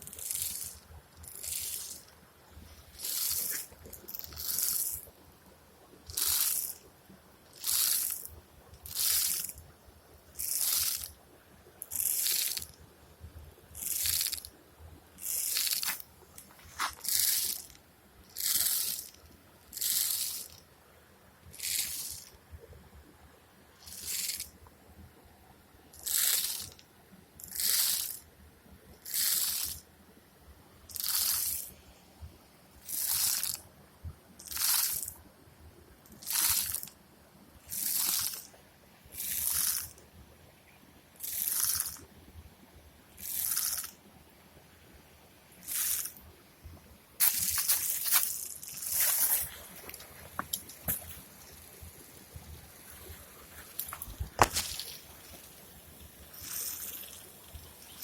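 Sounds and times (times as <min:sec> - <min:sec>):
termites rustling hiss: 0:00.0 - 0:05.3, 0:06.0 - 0:06.9, 0:07.5 - 0:11.2, 0:11.8 - 0:12.9, 0:15.2 - 0:20.7, 0:21.4 - 0:22.4, 0:23.8 - 0:24.6, 0:25.9 - 0:26.8, 0:27.4 - 0:28.3, 0:29.0 - 0:29.9, 0:30.9 - 0:32.2, 0:32.8 - 0:33.6, 0:37.6 - 0:40.0, 0:41.2 - 0:42.1, 0:45.5 - 0:46.4, 0:47.2 - 0:58.0.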